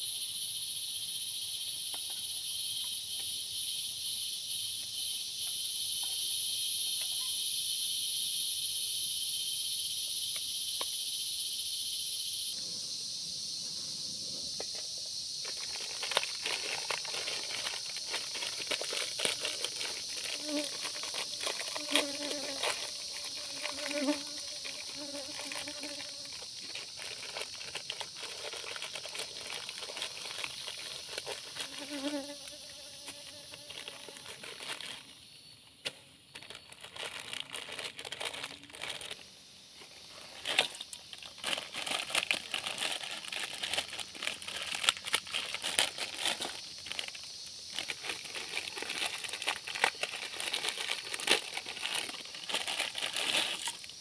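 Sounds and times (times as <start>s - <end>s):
high-pitched insect chorus: 0.0s - 54.0s
rustling and crinkling handling: 15.4s - 32.1s, 33.2s - 35.2s, 35.8s - 39.2s, 39.8s - 53.9s
fly buzzing: 19.7s - 26.5s, 31.5s - 34.2s.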